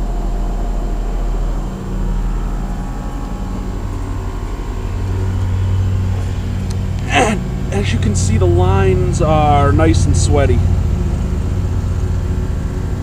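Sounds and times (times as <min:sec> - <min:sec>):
heat pump low hum: 0:00.0 - 0:13.0.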